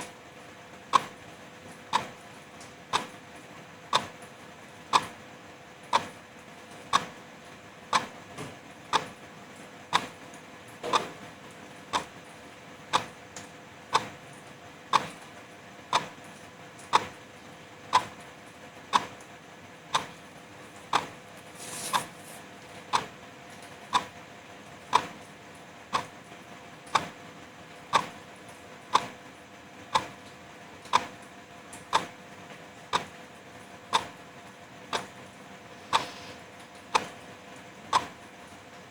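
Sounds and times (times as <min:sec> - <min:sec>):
wall clock ticking: 0:00.9 - 0:01.2, 0:01.9 - 0:02.2, 0:02.9 - 0:03.1, 0:03.9 - 0:04.2, 0:04.9 - 0:05.2, 0:05.9 - 0:06.1, 0:06.9 - 0:07.1, 0:07.9 - 0:08.2, 0:08.9 - 0:09.2, 0:09.9 - 0:10.2, 0:10.9 - 0:11.2, 0:11.9 - 0:12.2, 0:12.9 - 0:13.2, 0:13.9 - 0:14.2, 0:14.9 - 0:15.2, 0:15.9 - 0:16.2, 0:16.9 - 0:17.2, 0:17.9 - 0:18.2, 0:18.9 - 0:19.2, 0:19.9 - 0:20.1, 0:20.9 - 0:21.2, 0:22.9 - 0:23.2, 0:23.9 - 0:24.2, 0:24.9 - 0:25.2, 0:25.9 - 0:26.2, 0:26.9 - 0:27.2, 0:27.9 - 0:28.2, 0:28.9 - 0:29.2, 0:29.9 - 0:30.2, 0:30.9 - 0:31.2, 0:31.9 - 0:32.2, 0:32.9 - 0:33.2, 0:33.9 - 0:34.2, 0:34.9 - 0:35.3, 0:35.9 - 0:36.2, 0:36.8 - 0:37.2, 0:37.9 - 0:38.3.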